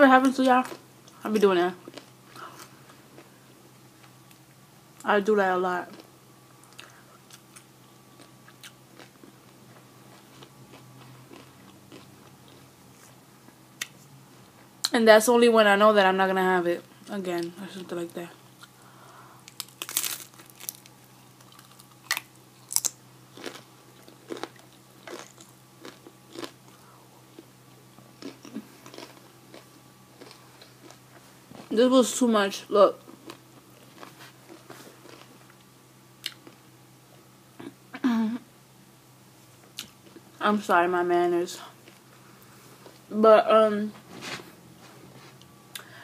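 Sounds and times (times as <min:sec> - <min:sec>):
faint low hum: 0:00.0 - 0:46.0
chewing and crunching food: 0:01.8 - 0:03.4, 0:05.9 - 0:14.1, 0:19.4 - 0:31.8, 0:33.0 - 0:37.2, 0:41.6 - 0:43.1.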